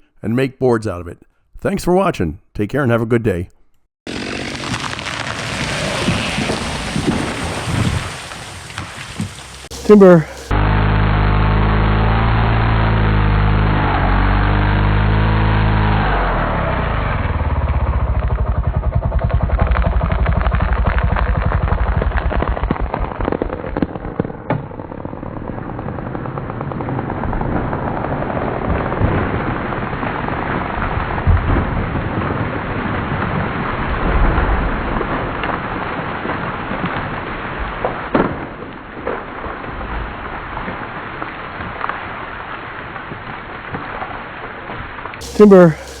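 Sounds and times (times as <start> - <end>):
tree cracking and snapping: 4.1 - 9.9
engine running: 9.2 - 20.3, 45.2 - 46.0.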